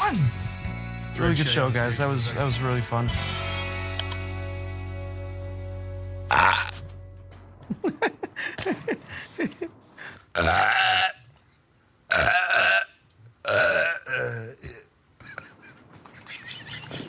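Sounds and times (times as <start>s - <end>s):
person burping: 6.3s - 6.9s, 10.3s - 11.2s, 12.1s - 15.0s.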